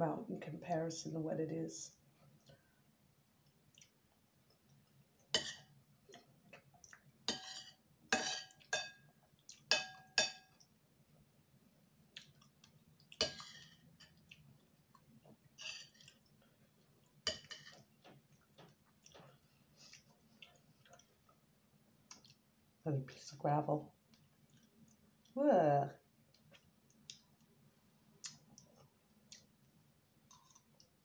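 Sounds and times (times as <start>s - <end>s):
cutlery clinking on dish: 7.3s - 9.1s, 9.7s - 10.6s, 17.3s - 17.8s.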